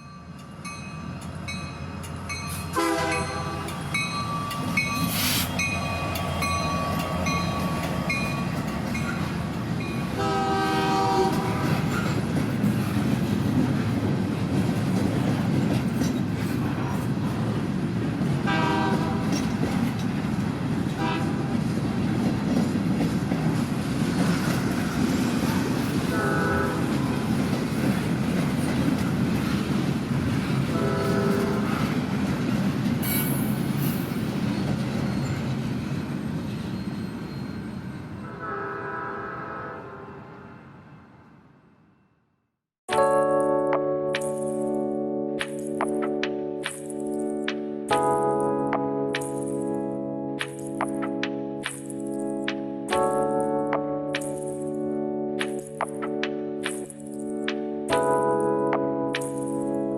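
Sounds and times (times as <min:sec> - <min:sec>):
train wheels rumbling on rail: 0:00.1 - 0:38.3
steam whistle blasts: 0:02.8 - 0:03.8, 0:05.1 - 0:05.8, 0:30.8 - 0:31.8, 0:38.3 - 0:40.5
regular clicking: 0:55.4 - 0:59.7.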